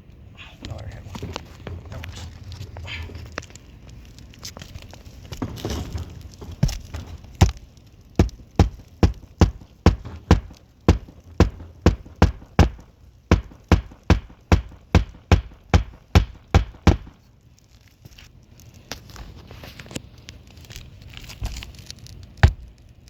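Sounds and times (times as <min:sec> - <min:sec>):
hammer striking roofing nails: 0:05.4 - 0:07.6, 0:08.2 - 0:17.2.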